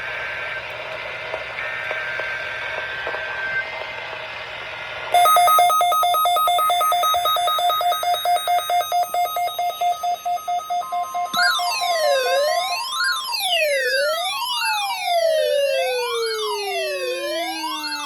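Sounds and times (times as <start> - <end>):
electronic alert beeping: 5.2 - 13.2.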